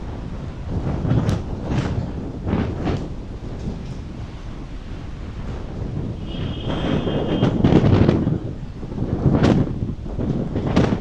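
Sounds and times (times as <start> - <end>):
strong wind buffeting microphone: 0.0 - 11.0.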